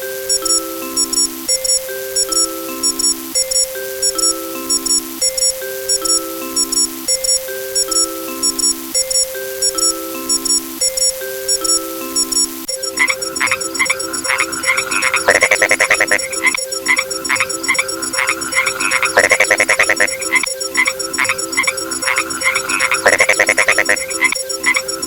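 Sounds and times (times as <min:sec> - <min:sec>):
electronic beeps: 0:00.0 - 0:25.0
frogs croaking in chorus: 0:12.7 - 0:25.0.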